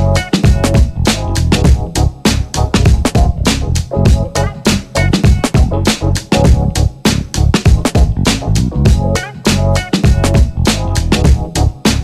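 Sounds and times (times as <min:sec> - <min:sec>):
funk music with drums and bass: 0:00.0 - 0:12.0.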